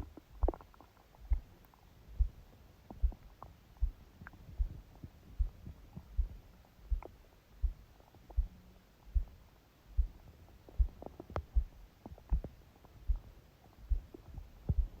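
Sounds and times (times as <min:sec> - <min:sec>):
heartbeat: 0:00.0 - 0:01.5, 0:02.1 - 0:15.0
stomach gurgles: 0:00.0 - 0:07.2, 0:10.7 - 0:15.0.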